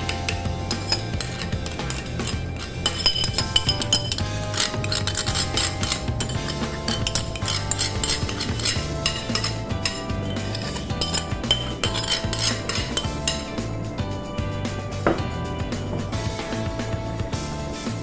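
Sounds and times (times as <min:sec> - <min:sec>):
utensil scraping a dish: 0:00.0 - 0:13.6
background music: 0:00.0 - 0:18.0.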